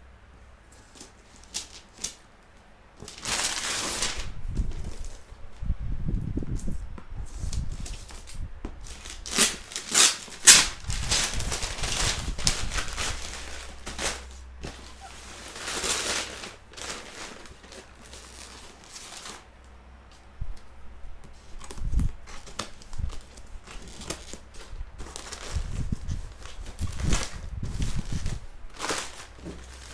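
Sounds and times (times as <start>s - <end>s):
plastic and cardboard crinkling: 0.8s - 2.2s, 3.0s - 5.7s, 7.2s - 19.5s, 21.2s - 29.9s
packaging crackles and scrapes: 3.0s - 5.3s, 7.2s - 19.5s, 21.3s - 29.9s.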